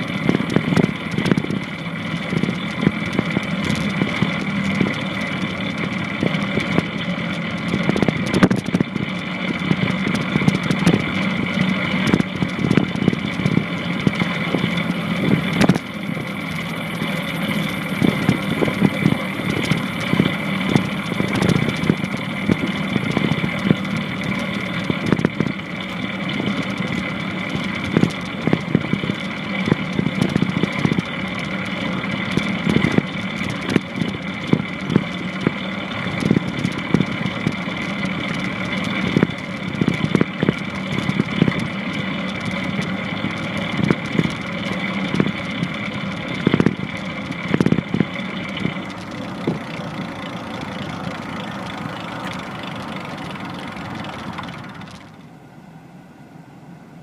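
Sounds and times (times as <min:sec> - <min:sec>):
skateboard wheels rolling on pavement: 0:00.0 - 0:55.3.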